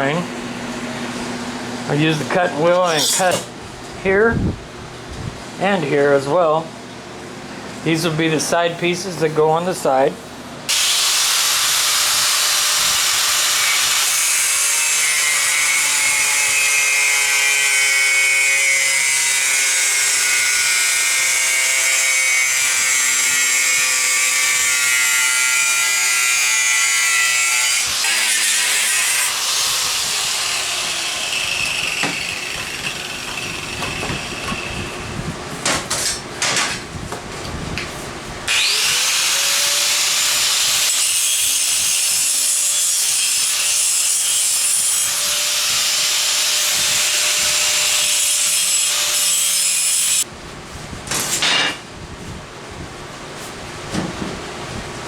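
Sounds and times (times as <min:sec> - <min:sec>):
angle grinder cutting metal: 0:10.7 - 0:34.8, 0:38.5 - 0:50.2.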